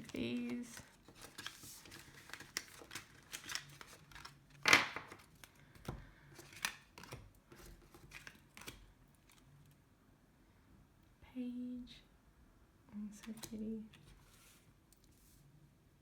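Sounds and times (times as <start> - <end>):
cards scraping and tapping: 0.0 - 9.4.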